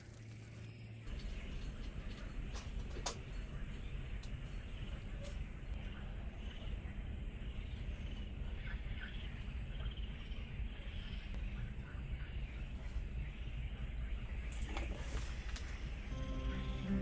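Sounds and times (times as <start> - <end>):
insects chirring: 0.1 - 17.0
low steady rumble: 15.6 - 17.0.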